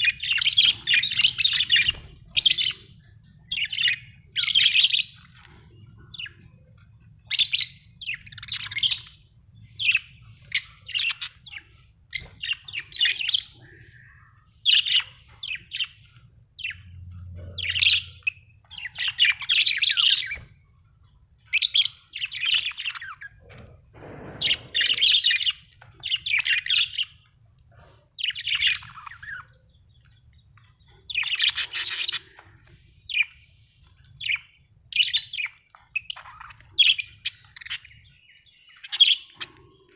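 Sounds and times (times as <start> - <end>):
budgerigar chirping: 17.4 - 20.4, 34.2 - 39.9.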